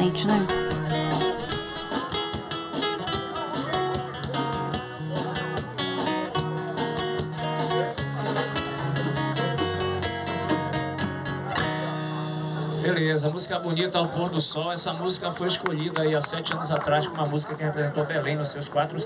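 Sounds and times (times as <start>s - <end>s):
steady bass line: 0.0s - 2.3s
strummed acoustic guitar: 0.0s - 13.2s.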